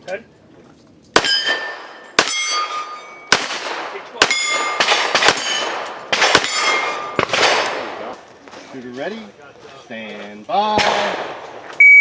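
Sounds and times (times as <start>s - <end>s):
steel targets clanging: 1.2s - 3.3s, 4.2s - 7.2s
pistol shots: 1.2s - 8.1s, 10.7s - 11.7s.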